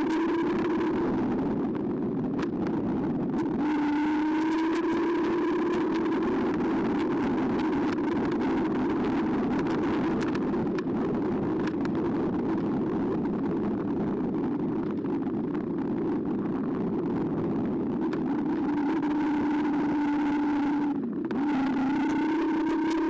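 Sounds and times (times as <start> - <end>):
bike riding wind rush: 0.0 - 23.0.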